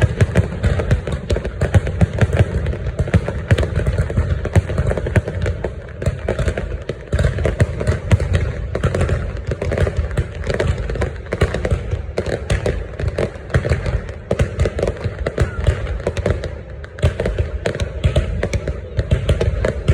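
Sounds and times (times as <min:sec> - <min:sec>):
fireworks bangs and crackles: 0:00.0 - 0:19.9.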